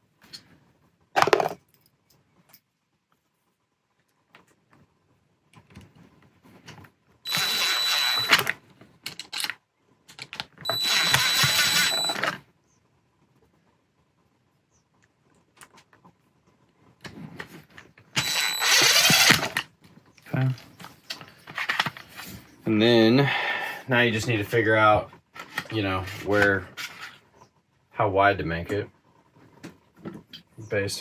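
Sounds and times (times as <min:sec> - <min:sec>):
power drill whining: 0:07.3 - 0:08.6, 0:10.6 - 0:12.4, 0:18.2 - 0:19.6.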